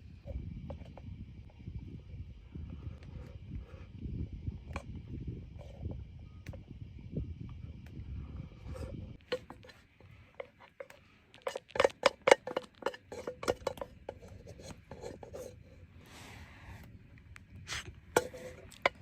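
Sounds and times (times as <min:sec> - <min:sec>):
low rumbling noise: 0:00.0 - 0:10.4.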